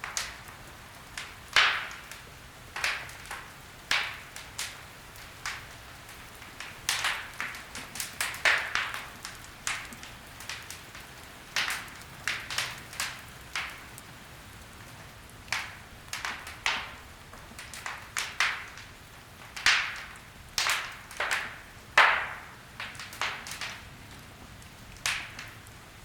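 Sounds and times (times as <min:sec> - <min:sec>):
wood fire crackling: 0:00.0 - 0:26.0.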